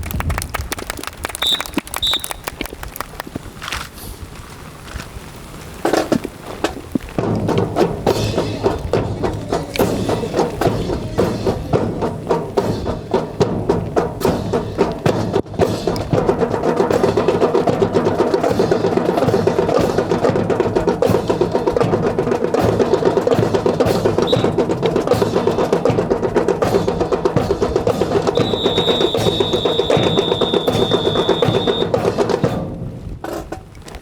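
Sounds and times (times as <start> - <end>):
high whistle-like tone: 1.4 - 2.4, 24.2 - 24.6, 28.3 - 31.9.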